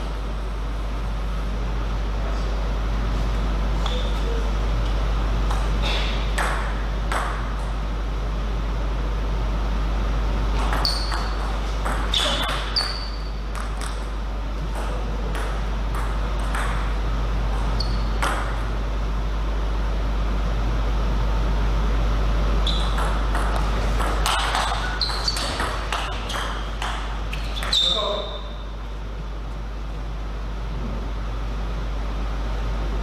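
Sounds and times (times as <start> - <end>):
table tennis ball hits: 5.5 - 7.7, 10.6 - 14.1, 14.7 - 17.0, 18.1 - 18.7, 22.8 - 28.4.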